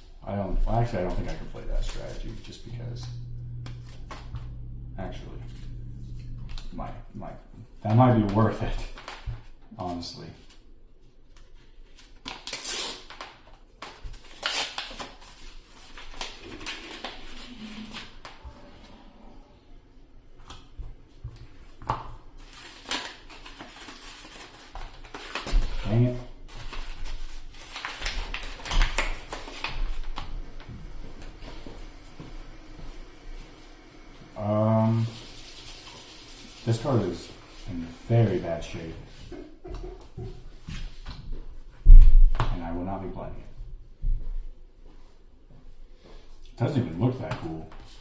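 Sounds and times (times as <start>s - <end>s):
cards and wrappers rustling: 1.0s - 2.6s, 21.6s - 30.2s
person humming hmm: 3.0s - 6.8s.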